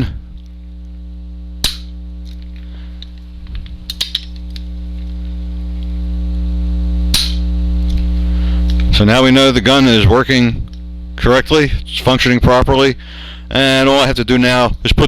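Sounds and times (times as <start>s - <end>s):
electrical hum: 0.0s - 15.0s
pistol hammer snap: 1.6s - 2.4s, 3.9s - 4.7s, 7.1s - 7.5s
pistol metallic clicks: 3.9s - 4.7s.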